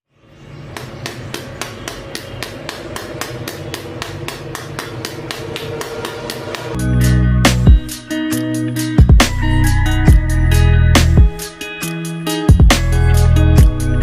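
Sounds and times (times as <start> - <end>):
electronic music with ticking beat: 0.7 - 14.0
loud bass-heavy music: 6.3 - 11.6, 12.5 - 14.0.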